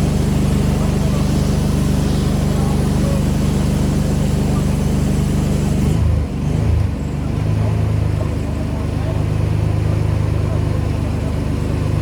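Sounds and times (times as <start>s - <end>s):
pressure washer engine running: 0.0s - 6.0s.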